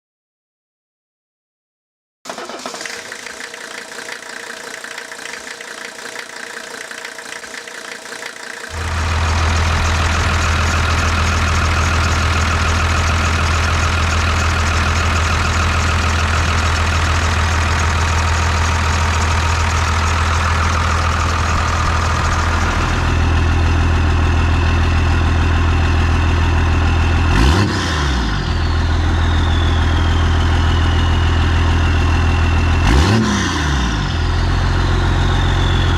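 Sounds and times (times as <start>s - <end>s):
diesel engine idling: 2.3s - 27.6s, 28.2s - 33.0s, 34.0s - 35.9s
engine revving: 2.3s - 35.9s
turbocharger whistling: 3.0s - 35.9s.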